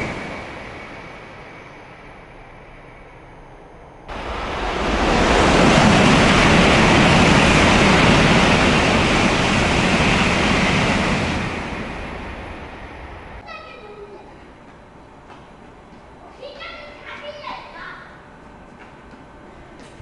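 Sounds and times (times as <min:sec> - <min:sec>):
high-speed train rushing past: 0:00.0 - 0:15.8.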